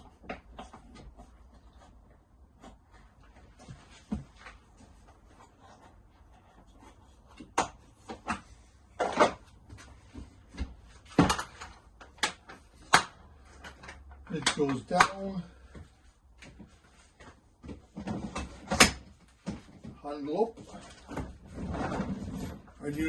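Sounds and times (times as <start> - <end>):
plastic toolbox clicks and knocks: 10.5 - 15.2.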